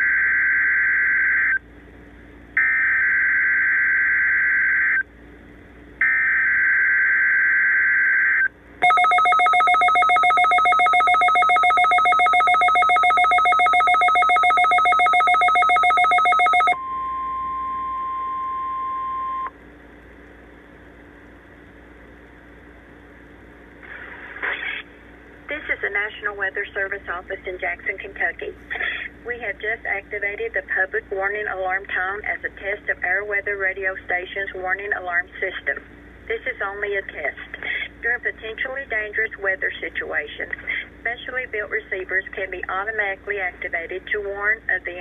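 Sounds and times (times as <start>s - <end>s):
rapidly pulsing electronic alarm: 6.0s - 19.5s
steady single alarm tone: 6.1s - 19.5s.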